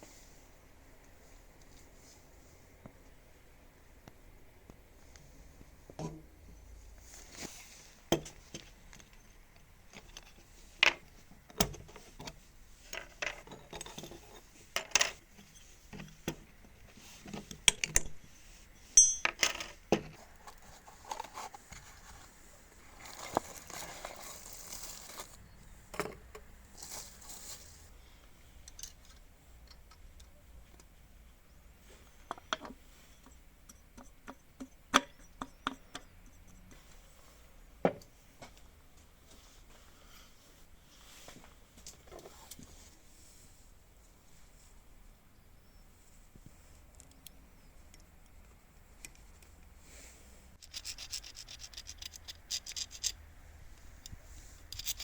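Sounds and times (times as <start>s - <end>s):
metal piece ringing: 19.0s - 19.4s
small metal parts clinking: 19.0s - 19.8s, 50.6s - 53.2s, 54.0s - 55.0s.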